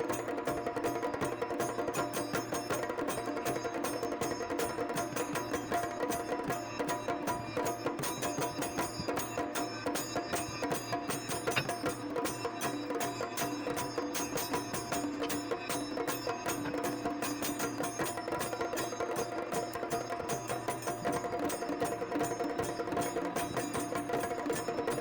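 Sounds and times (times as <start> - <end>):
ringing held tones: 7.6 - 25.0.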